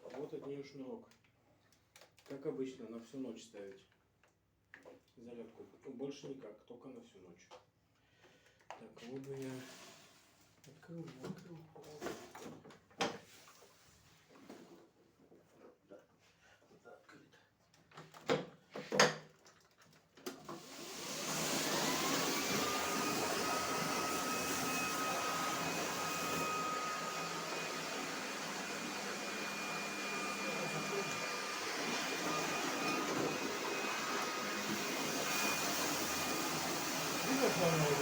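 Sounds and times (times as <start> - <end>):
floor scrubber motor whine: 20.7 - 38.0.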